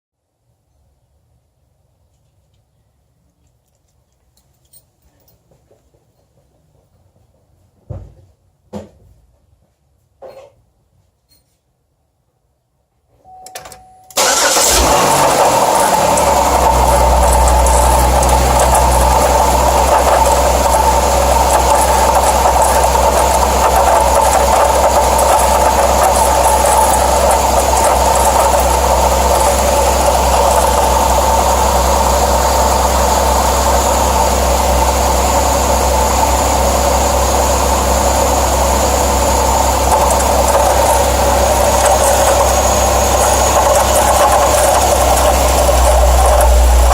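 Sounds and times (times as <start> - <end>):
car engine starting and idling: 14.2 - 46.9
high-pitched engine noise: 14.2 - 46.9.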